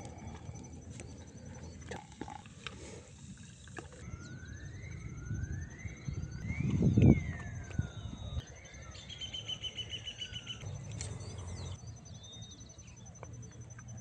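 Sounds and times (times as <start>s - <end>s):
wind rumbling on microphone: 4.0s - 8.4s
bird calling in rising whistles: 4.0s - 13.1s.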